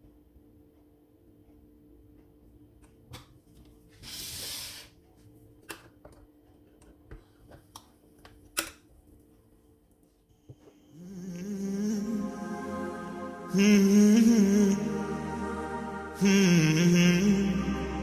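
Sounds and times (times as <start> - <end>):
short hiss: 4.0 - 5.0
faint steady hum: 10.3 - 18.0.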